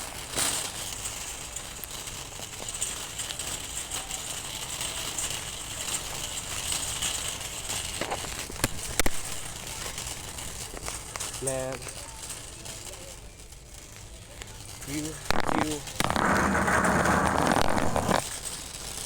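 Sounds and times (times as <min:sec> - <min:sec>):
sharp clicks: 0:15.3 - 0:18.2.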